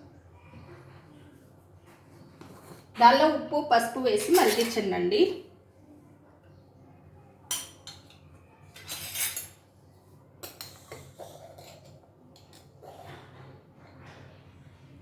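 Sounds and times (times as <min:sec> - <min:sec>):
spoon clinking steel vessels: 0:04.2 - 0:04.9, 0:07.5 - 0:09.7, 0:10.4 - 0:11.1.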